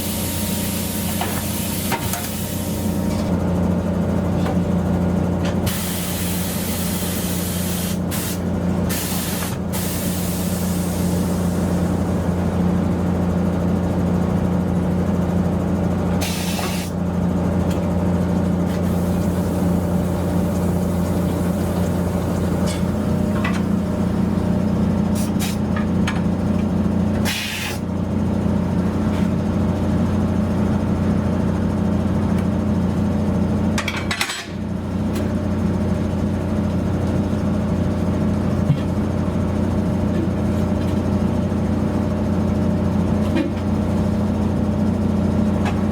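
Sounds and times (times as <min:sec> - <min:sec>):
compressed air hissing: 0:05.7 - 0:11.8, 0:16.2 - 0:16.9, 0:18.8 - 0:25.6, 0:27.3 - 0:27.8.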